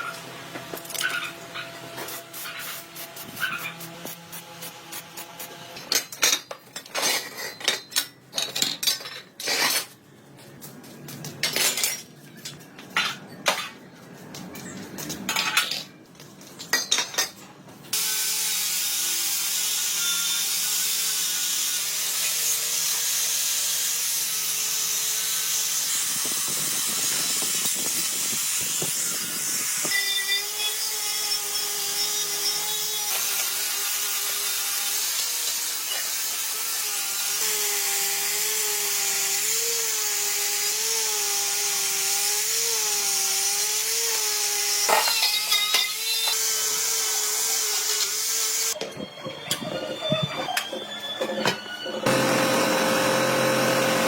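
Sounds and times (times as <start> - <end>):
metal tools clinking: 5.8 - 10.0
power tool whirring: 17.9 - 48.8, 52.0 - 54.0.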